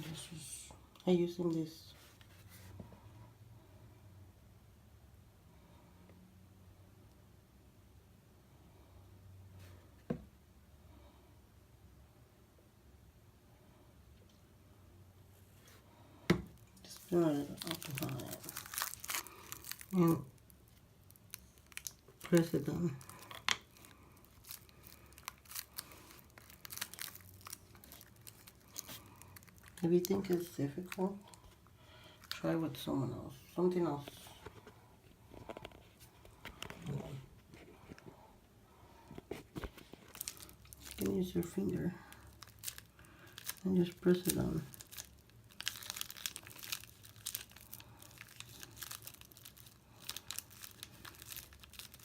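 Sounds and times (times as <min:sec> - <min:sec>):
plastic pressing eyeshadow crinkling: 0:16.4 - 0:32.4, 0:39.3 - 0:52.0.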